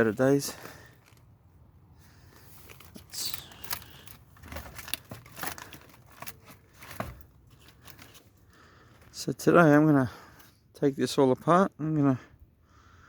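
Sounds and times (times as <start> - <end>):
rustling and crackling: 2.2 - 9.2.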